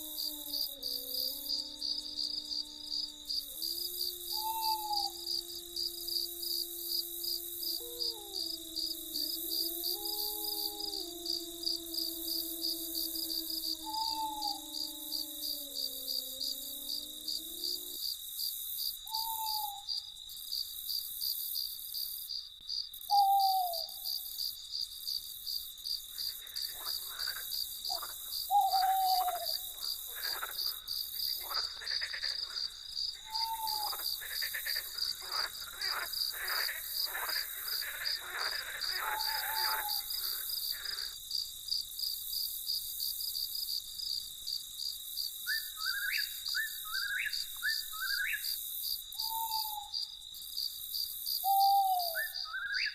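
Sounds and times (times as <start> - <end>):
owl hooting: 0.0 - 18.0, 19.1 - 19.9, 23.1 - 24.0, 26.5 - 30.8, 31.4 - 41.2, 49.2 - 49.9, 51.4 - 52.9
crickets chirping: 0.0 - 52.9
rapid rasping calls: 26.3 - 41.2.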